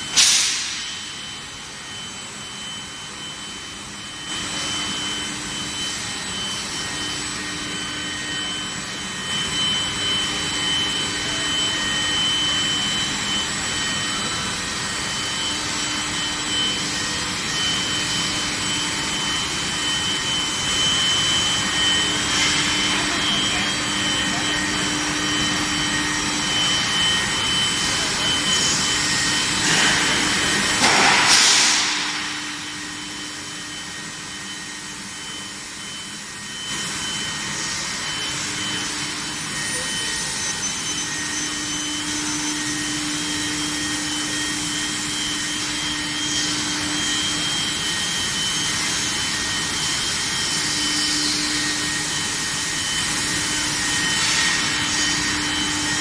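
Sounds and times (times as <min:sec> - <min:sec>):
industrial machine hiss: 0:13.9 - 0:34.9, 0:36.1 - 0:56.0.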